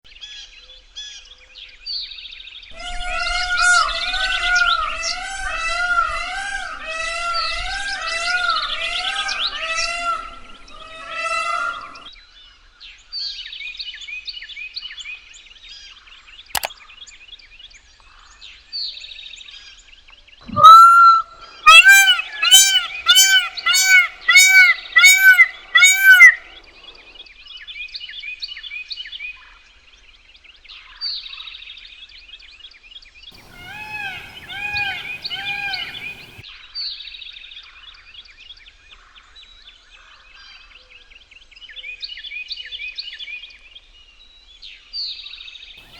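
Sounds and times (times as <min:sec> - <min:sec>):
peacock honking calls: 0:20.5 - 0:27.2, 0:33.4 - 0:36.4
small birds chirping: 0:20.5 - 0:27.2, 0:33.4 - 0:36.4.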